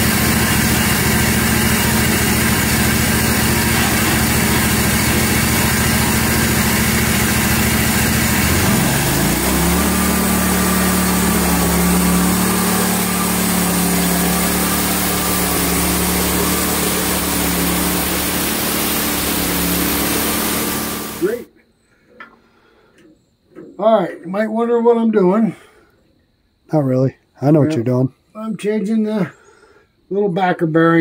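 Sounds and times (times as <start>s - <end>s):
small gasoline engine running: 0.0s - 21.5s.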